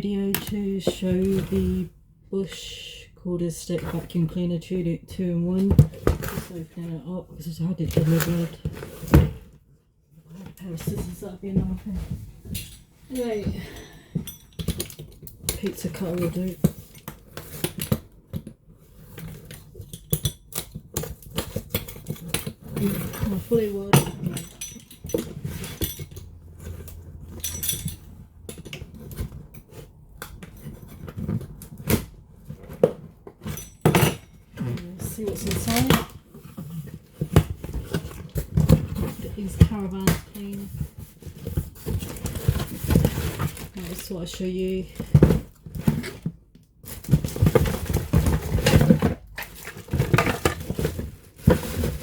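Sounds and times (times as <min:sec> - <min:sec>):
cardboard scraping and rustling: 0:34.4 - 0:52.0.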